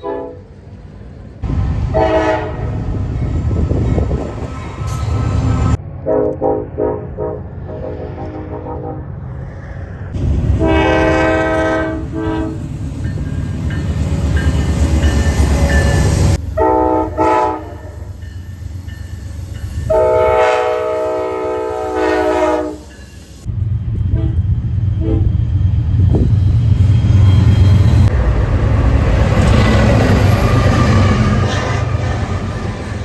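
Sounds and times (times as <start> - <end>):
train air horns: 0.0 - 0.5, 1.8 - 2.9, 10.5 - 12.7, 15.4 - 18.0, 19.9 - 23.0, 25.0 - 25.3
passing train rumble: 0.0 - 33.0.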